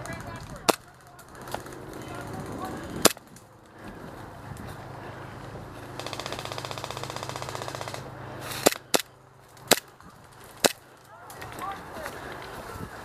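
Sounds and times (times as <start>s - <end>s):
airsoft rifle full-auto burst: 5.9s - 9.0s.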